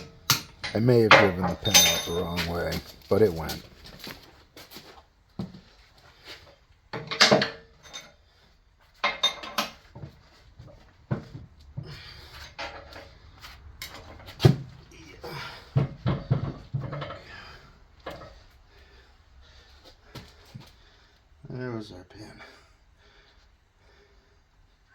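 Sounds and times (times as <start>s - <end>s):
metal parts clanking and scraping: 0.0s - 3.3s, 7.0s - 8.2s, 9.0s - 9.8s, 12.4s - 13.1s, 15.8s - 17.3s.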